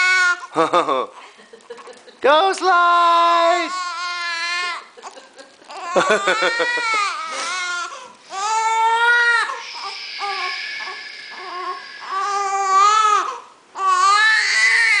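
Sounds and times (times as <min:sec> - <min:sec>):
young child crying: 0:05.7 - 0:09.7.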